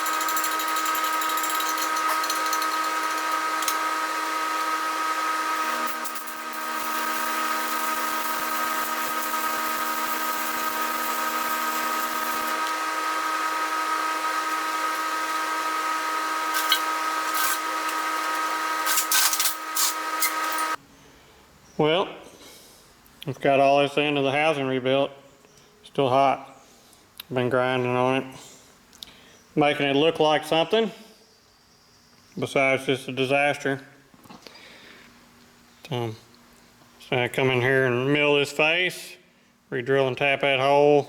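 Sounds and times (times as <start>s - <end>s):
lower grinding tone: 0.0s - 20.8s
power grinder grinding metal: 0.0s - 20.8s.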